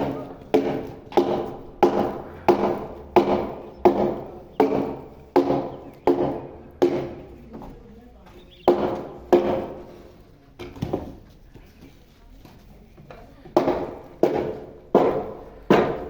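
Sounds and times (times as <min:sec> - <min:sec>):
hammer blows ringing: 0:00.0 - 0:07.4, 0:08.5 - 0:10.0, 0:13.6 - 0:16.0.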